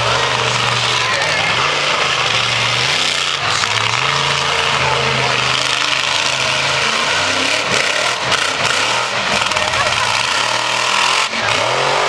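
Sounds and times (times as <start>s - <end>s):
truck engine running: 0.0s - 12.0s.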